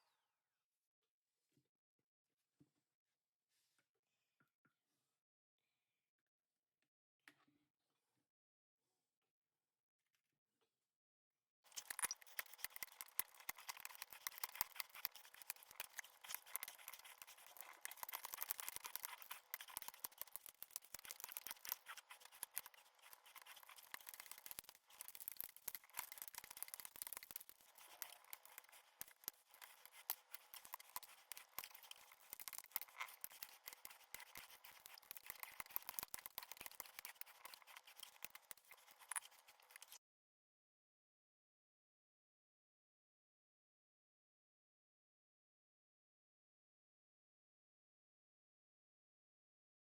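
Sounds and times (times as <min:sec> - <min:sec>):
scratchy rubbing: 0:11.7 - 0:40.0.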